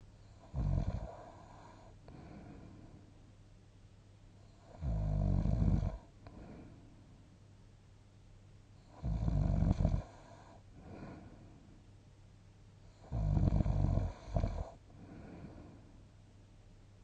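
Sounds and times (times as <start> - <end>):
soft breath out: 1.2 - 3.2, 6.2 - 7.3, 10.2 - 11.8, 14.9 - 16.0
person snoring: 9.0 - 11.2, 13.0 - 15.7.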